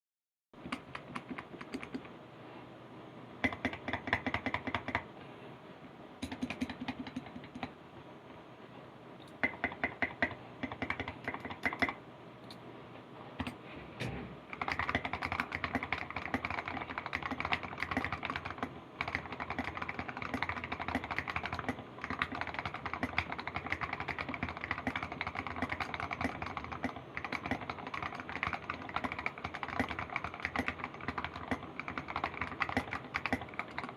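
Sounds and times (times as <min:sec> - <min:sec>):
mechanical keyboard typing: 0:00.6 - 0:02.1, 0:03.4 - 0:05.0, 0:06.2 - 0:07.7, 0:09.3 - 0:12.0, 0:14.5 - 0:33.9.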